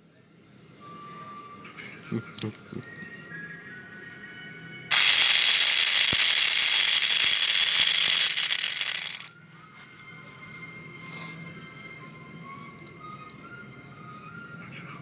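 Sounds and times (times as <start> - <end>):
angle grinder grinding: 4.9 - 9.3.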